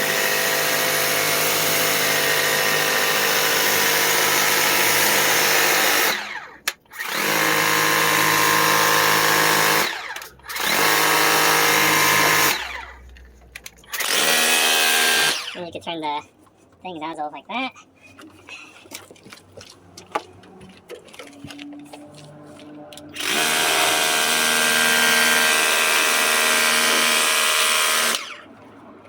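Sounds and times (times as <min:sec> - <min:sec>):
electric pressure washer running: 0:00.0 - 0:12.9, 0:13.9 - 0:15.6, 0:23.1 - 0:28.5.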